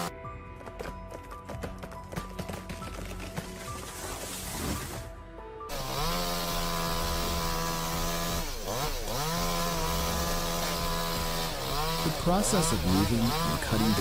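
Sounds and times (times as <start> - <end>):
chainsaw running: 5.7 - 14.0.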